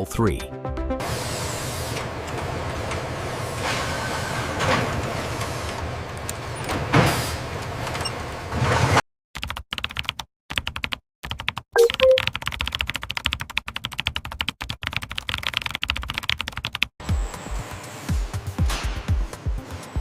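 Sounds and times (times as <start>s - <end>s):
machinery humming and whirring: 1.0s - 8.5s, 17.0s - 20.0s.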